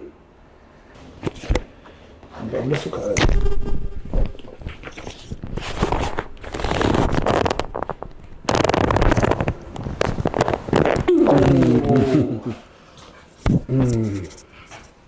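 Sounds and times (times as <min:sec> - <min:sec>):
rustling: 0:03.9 - 0:12.3
joints cracking: 0:04.6 - 0:11.8.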